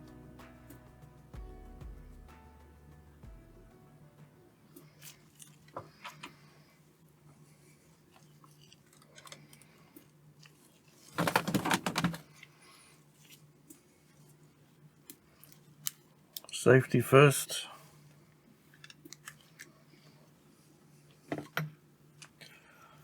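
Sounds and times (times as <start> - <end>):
items tapping on workbench: 11.2 - 12.2
loud rattling clatter: 11.2 - 12.2.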